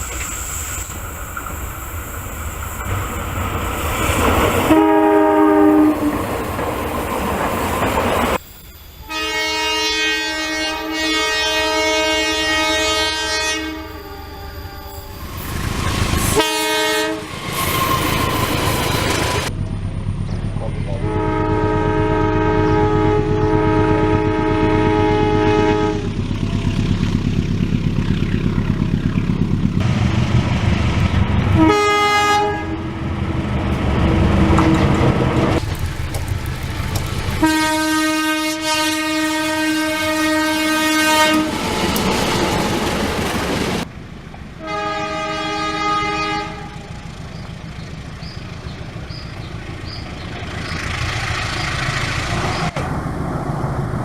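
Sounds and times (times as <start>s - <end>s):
train wheel clatter: 0.0s - 8.5s, 33.3s - 37.8s, 41.2s - 44.5s
locomotive engine rumble: 0.0s - 54.0s
locomotive horn blasts: 4.7s - 6.2s, 9.0s - 15.2s, 16.3s - 18.5s, 21.0s - 26.2s, 31.5s - 33.0s, 37.4s - 41.8s, 44.6s - 47.0s.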